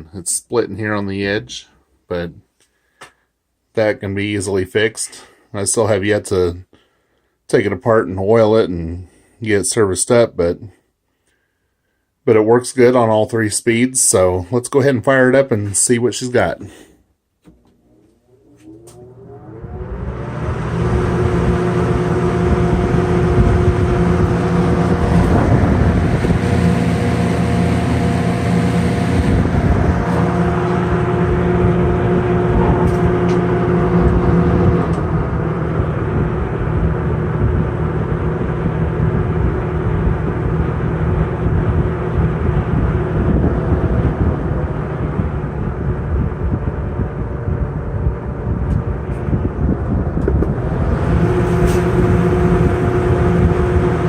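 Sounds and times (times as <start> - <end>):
box fan running: 17.4 - 54.0.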